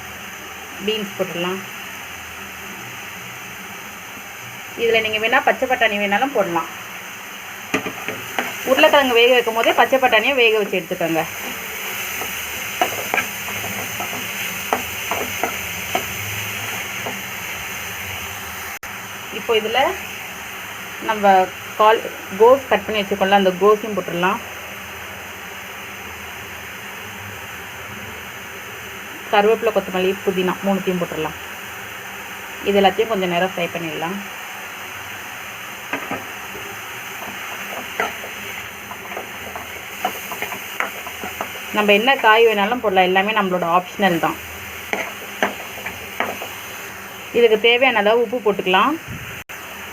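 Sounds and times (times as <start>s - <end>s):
vegetables sizzling in oil: 0.0s - 49.9s
spatula scraping pan: 11.3s - 17.3s, 37.1s - 41.7s
utensil scraping pan: 11.4s - 16.2s.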